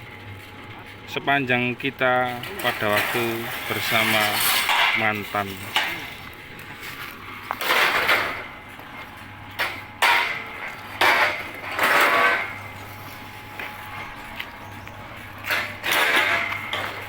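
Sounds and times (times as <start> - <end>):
steady low hum: 0.0 - 17.0
scraping and clattering: 2.4 - 6.2, 9.6 - 12.9, 15.4 - 17.0.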